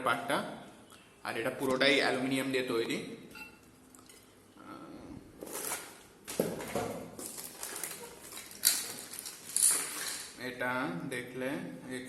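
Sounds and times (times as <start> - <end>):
wrapping rustling: 7.2 - 10.4.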